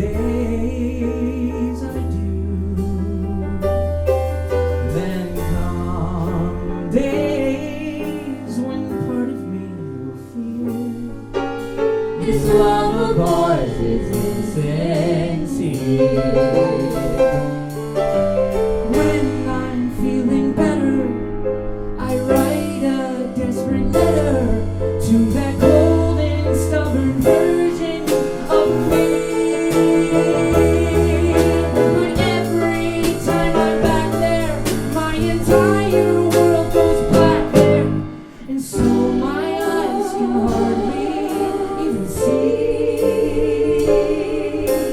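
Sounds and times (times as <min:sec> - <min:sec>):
drums: 0:00.0 - 0:21.2, 0:21.9 - 0:44.9
bass: 0:00.0 - 0:44.9
piano: 0:00.0 - 0:44.9
person singing: 0:12.2 - 0:17.8, 0:22.0 - 0:44.9.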